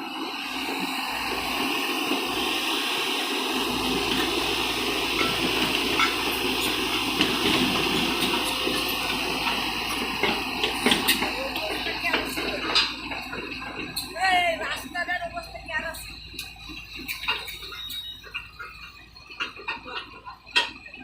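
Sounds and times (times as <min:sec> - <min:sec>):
rushing hissing noise: 0:00.0 - 0:14.1.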